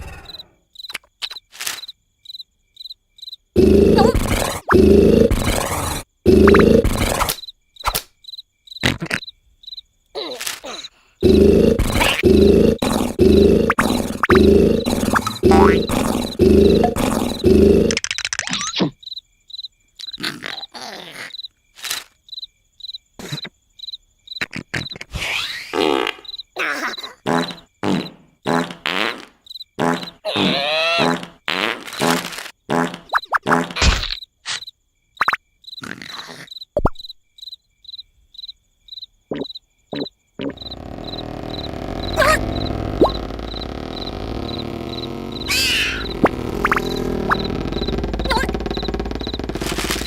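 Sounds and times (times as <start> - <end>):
crickets chirping: 0.0 - 25.0, 25.7 - 31.4, 32.0 - 50.0
cartoon snoring: 3.6 - 7.4, 10.6 - 18.0, 26.6 - 29.2, 29.8 - 31.4, 40.0 - 50.0.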